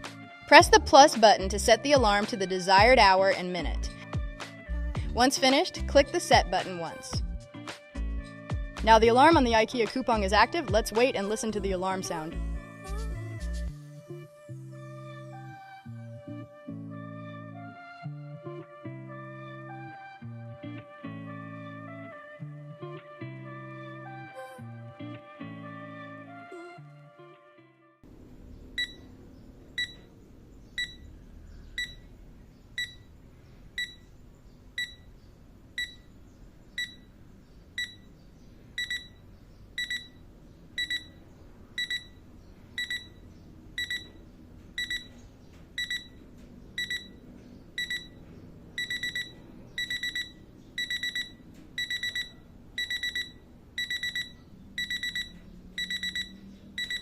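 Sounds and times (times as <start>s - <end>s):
alarm clock beeping: 28.8s - 29.0s, 29.8s - 30.0s, 30.8s - 31.1s, 31.8s - 32.0s, 32.8s - 33.1s, 33.8s - 34.1s, 34.8s - 35.1s, 35.8s - 36.1s, 36.8s - 37.1s, 37.8s - 38.1s, 38.8s - 39.2s, 39.8s - 40.2s, 40.8s - 41.2s, 41.8s - 42.2s, 42.8s - 43.2s, 43.8s - 44.2s, 44.8s - 45.2s, 45.8s - 46.2s, 46.8s - 47.2s, 47.8s - 57.0s.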